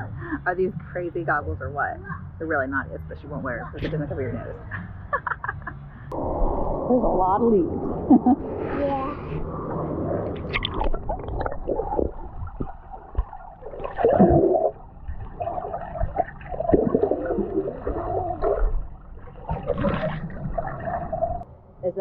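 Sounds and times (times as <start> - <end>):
water gurgling and sloshing: 0.0 - 21.5
water splash: 6.2 - 21.4.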